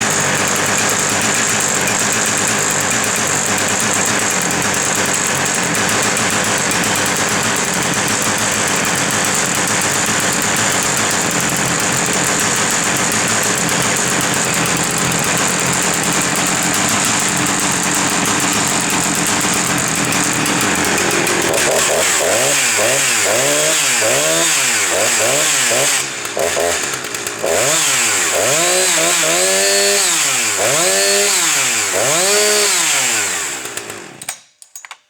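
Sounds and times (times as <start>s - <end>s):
chainsaw engine running: 0.0s - 34.3s.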